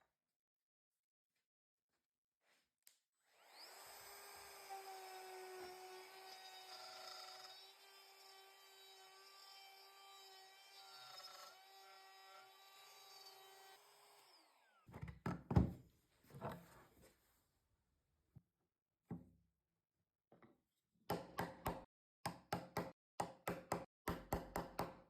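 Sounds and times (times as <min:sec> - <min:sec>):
wood router motor running: 0:03.3 - 0:14.9.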